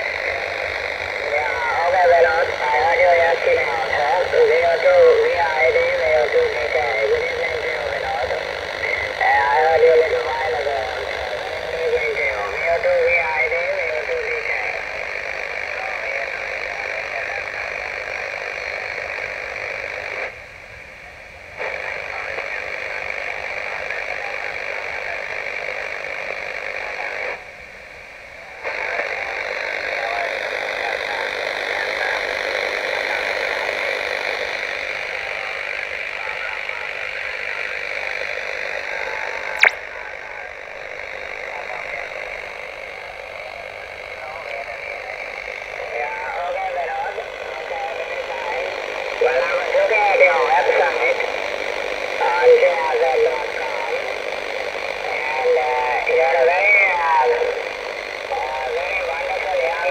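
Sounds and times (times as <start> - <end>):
radio static hiss: 0.0 - 59.9
sharp click: 39.6 - 39.8.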